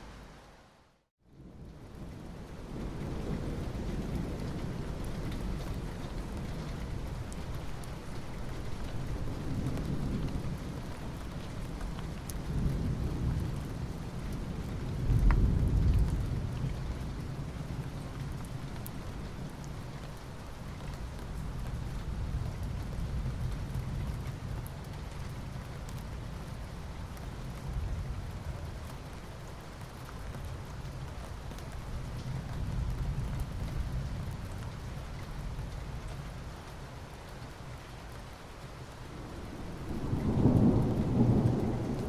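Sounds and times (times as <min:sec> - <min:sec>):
soft rain on asphalt: 0:00.0 - 0:42.0.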